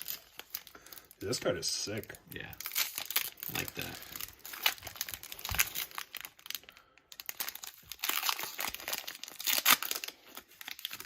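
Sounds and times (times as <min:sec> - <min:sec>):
plastic wrapping crinkling: 0:00.0 - 0:11.0.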